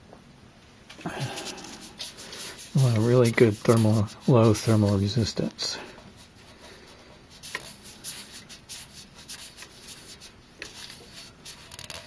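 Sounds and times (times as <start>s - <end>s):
wipe rubbing on metal: 1.3s - 5.2s.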